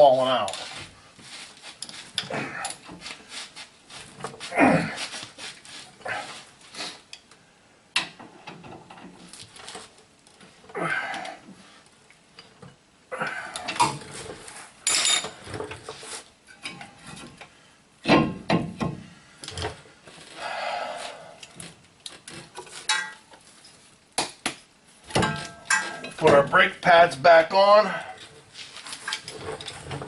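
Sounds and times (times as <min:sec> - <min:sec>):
metal tools clinking and clattering: 0:14.8 - 0:15.4, 0:22.6 - 0:23.8, 0:25.2 - 0:26.5.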